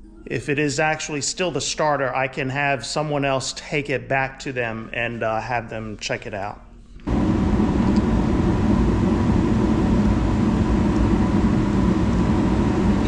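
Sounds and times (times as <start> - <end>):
low machine rumble: 7.1 - 13.0.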